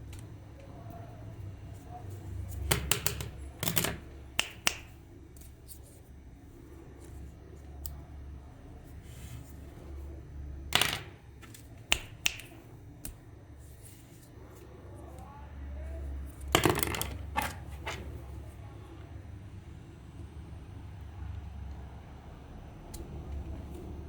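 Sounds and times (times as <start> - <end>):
sharp snaps and clicks: 2.5 - 5.5, 7.8 - 8.0, 11.4 - 13.2, 22.9 - 23.4.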